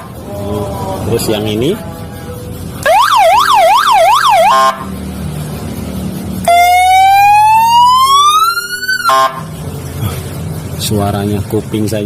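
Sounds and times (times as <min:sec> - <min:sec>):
electronic siren yelp and wail: 0:02.8 - 0:04.8, 0:06.4 - 0:09.5.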